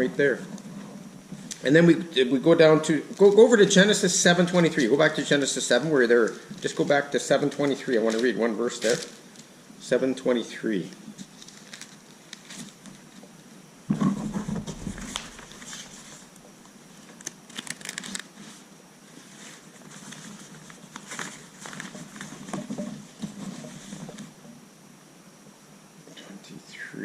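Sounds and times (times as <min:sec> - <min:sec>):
paper pages rustling: 0:03.1 - 0:09.2, 0:11.2 - 0:13.2, 0:14.2 - 0:16.4, 0:17.0 - 0:24.3.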